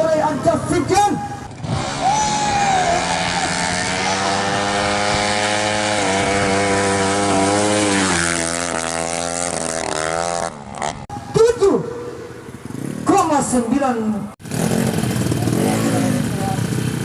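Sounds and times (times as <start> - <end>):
scooter engine at full throttle: 0.1 - 13.5, 14.3 - 17.0.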